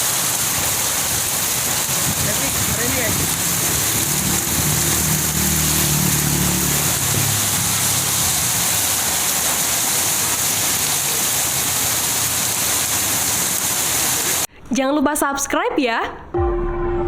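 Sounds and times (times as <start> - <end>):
heavy rain hissing: 0.0 - 14.5
car engine humming: 2.4 - 14.3.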